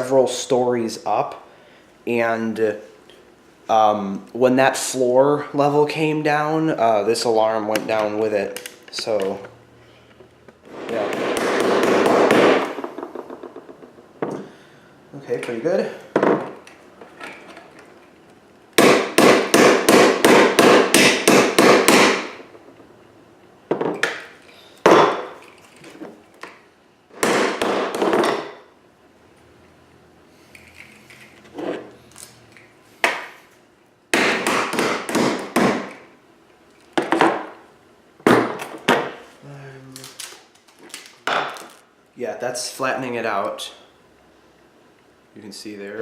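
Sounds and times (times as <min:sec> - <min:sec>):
hammer striking metal: 0:10.7 - 0:12.8, 0:18.8 - 0:22.4.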